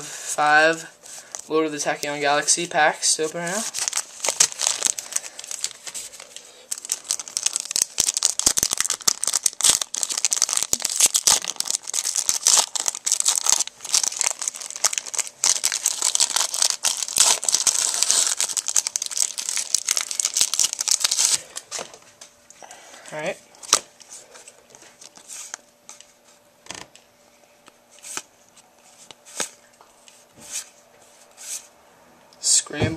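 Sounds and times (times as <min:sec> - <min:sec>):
foil wrappers crinkling and tearing: 0:00.7 - 0:21.9, 0:23.5 - 0:26.0.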